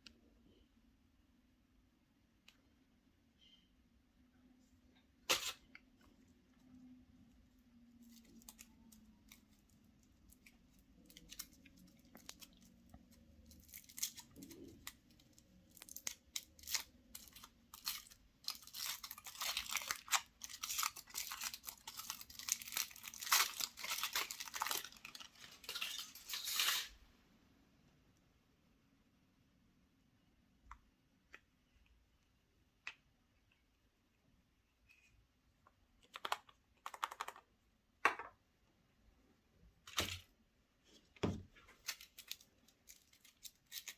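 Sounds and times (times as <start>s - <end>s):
foil wrapper crinkling: 7.9s - 26.9s, 41.8s - 43.9s.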